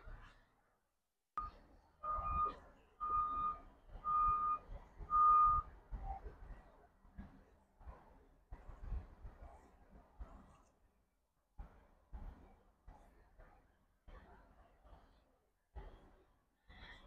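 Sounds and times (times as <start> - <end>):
electronic beeps: 1.4 - 5.6.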